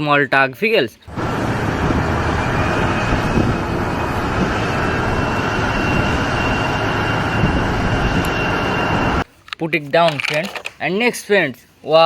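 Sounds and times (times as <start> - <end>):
vehicle engine rumble: 1.1 - 9.2
faint high whine: 1.1 - 9.3.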